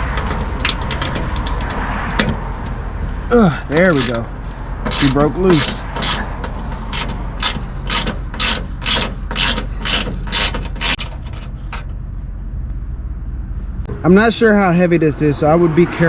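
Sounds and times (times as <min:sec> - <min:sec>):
hand ratchet clicking: 0:04.9 - 0:11.1.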